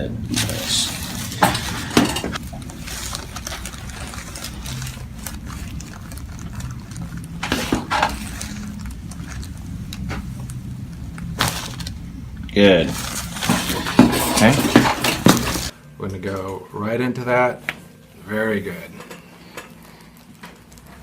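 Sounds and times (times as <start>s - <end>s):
steady low hum: 0.0s - 16.8s.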